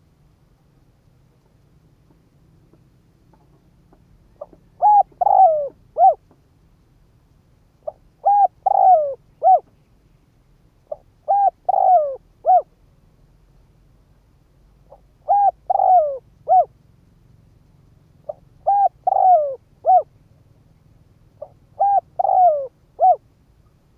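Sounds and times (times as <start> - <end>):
dove cooing: 4.3 - 6.3, 7.8 - 9.7, 10.9 - 12.8, 14.8 - 16.8, 18.2 - 20.2, 21.3 - 23.3.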